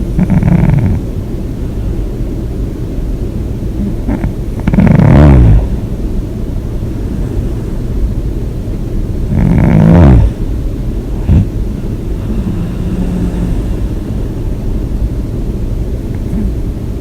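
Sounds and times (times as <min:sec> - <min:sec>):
person snoring loudly: 0:00.0 - 0:01.1, 0:03.8 - 0:05.8, 0:09.3 - 0:10.5, 0:11.2 - 0:15.2
steady low rumble: 0:00.0 - 0:17.0.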